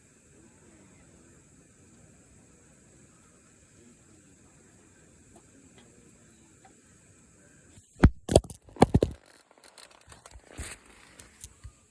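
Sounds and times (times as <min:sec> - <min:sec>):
sharp knocks and clatters: 0:08.0 - 0:10.8
short rustle: 0:09.2 - 0:11.6.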